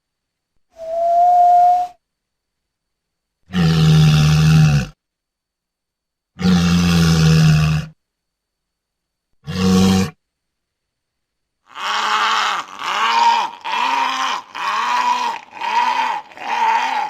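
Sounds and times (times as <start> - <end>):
walrus calls: 11.7 - 17.0.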